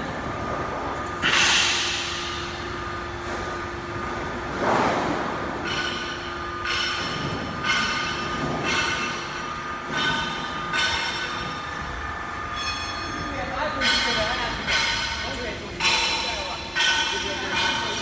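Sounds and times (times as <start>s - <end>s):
machine hum: 0.0s - 18.0s
high-pitched metallic squeals: 12.4s - 14.5s.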